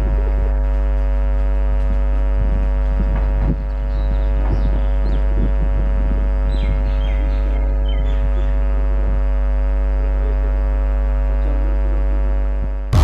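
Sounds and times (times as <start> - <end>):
loud machine hum: 0.0 - 13.0
bird chirps: 3.6 - 5.5, 6.4 - 8.7.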